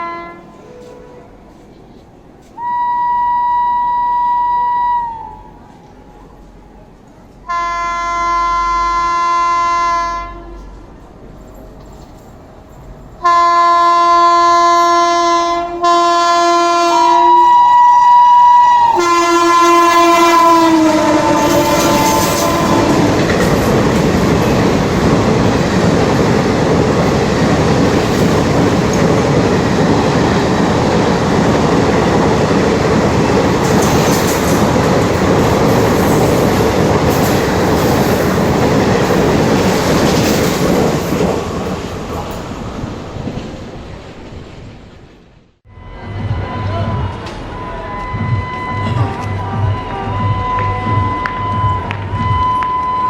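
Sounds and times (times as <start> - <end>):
locomotive horn blasts: 0.0 - 1.3, 7.5 - 10.6, 13.2 - 23.8, 45.7 - 53.0
fast train rushing past: 0.0 - 53.0.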